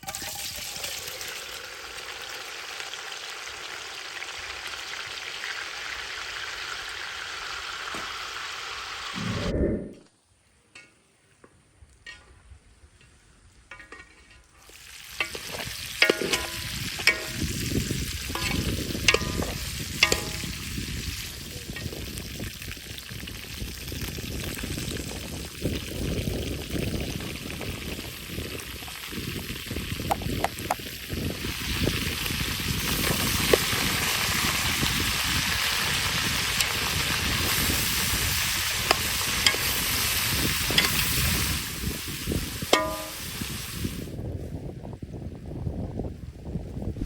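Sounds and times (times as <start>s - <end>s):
sausages sizzling in a pot: 0.0s - 9.2s, 14.4s - 44.2s
utensil knocking against pot: 16.0s - 17.4s, 18.4s - 20.6s, 38.9s - 39.8s, 40.7s - 41.0s, 42.8s - 43.2s.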